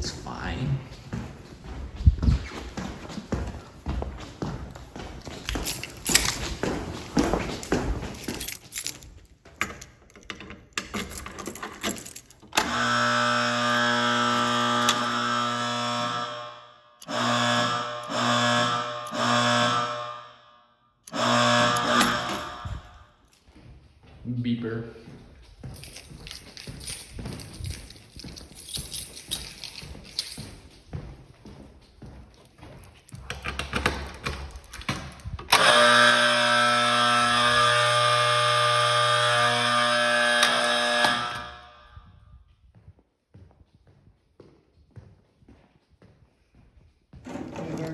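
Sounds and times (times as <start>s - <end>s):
footsteps walking: 0.0s - 13.0s, 13.6s - 15.5s, 21.1s - 33.4s
rattling and clicking: 5.4s - 12.9s
buzzy fire alarm horn: 12.5s - 23.2s, 35.2s - 42.4s.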